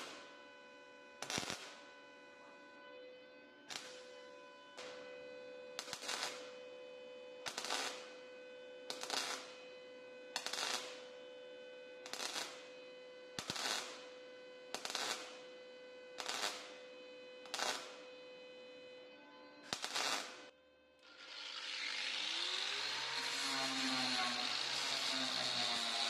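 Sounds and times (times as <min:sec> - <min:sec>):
welder crackling bursts: 0:07.5 - 0:08.0, 0:08.9 - 0:09.4, 0:10.4 - 0:10.9, 0:13.4 - 0:14.1, 0:14.8 - 0:15.4, 0:16.2 - 0:16.8, 0:17.4 - 0:18.0, 0:19.7 - 0:20.4, 0:21.0 - 0:26.0.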